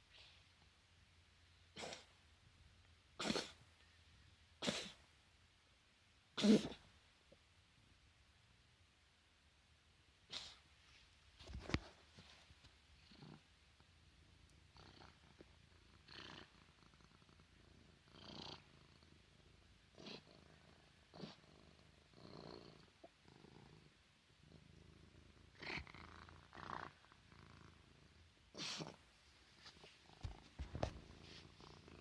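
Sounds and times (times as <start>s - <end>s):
cat coughing: 3.2s - 3.6s, 6.4s - 6.8s
purr-like rumble: 14.6s - 29.0s.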